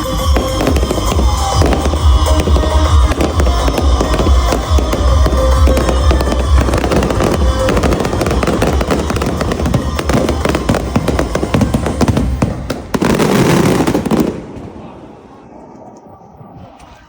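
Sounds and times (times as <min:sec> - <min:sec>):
music with heavy bass beat: 0:00.0 - 0:12.1
fireworks bangs and crackles: 0:00.0 - 0:17.0.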